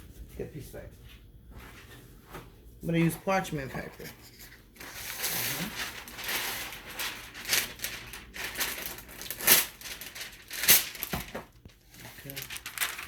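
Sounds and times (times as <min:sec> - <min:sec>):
paper crinkling and rustling: 0:04.7 - 0:13.0.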